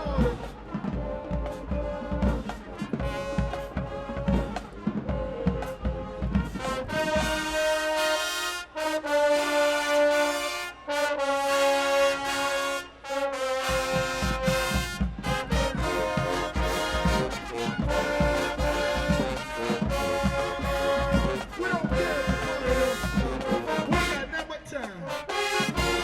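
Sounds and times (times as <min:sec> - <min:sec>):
drumline and bass drums: 0:00.0 - 0:08.1, 0:13.6 - 0:26.0
brass section playing chords: 0:00.0 - 0:26.0.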